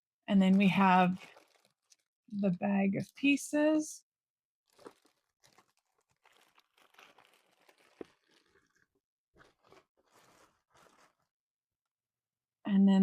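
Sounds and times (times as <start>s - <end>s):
plastic bag crinkling: 0.5s - 2.1s, 4.7s - 11.3s.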